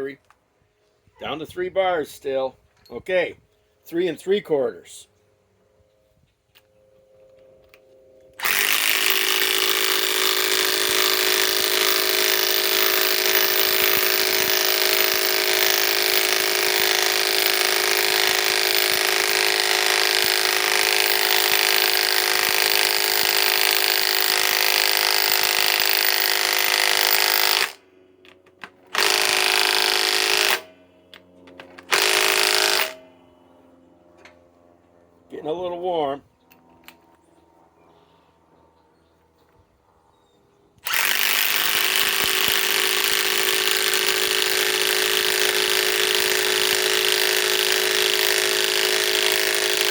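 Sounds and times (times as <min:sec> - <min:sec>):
impact wrench whining rattle: 0:08.4 - 0:33.1, 0:40.8 - 0:49.9.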